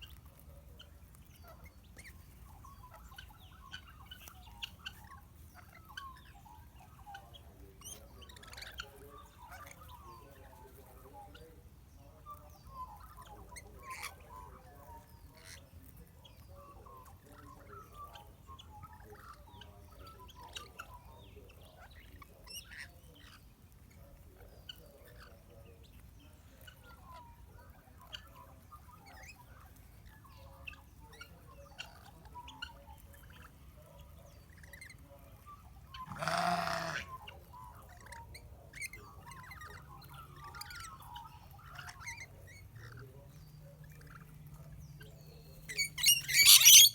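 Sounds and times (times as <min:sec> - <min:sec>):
parrots chirping softly: 0:00.0 - 0:46.9
parrot harsh squawk: 0:36.0 - 0:37.1, 0:45.8 - 0:46.9.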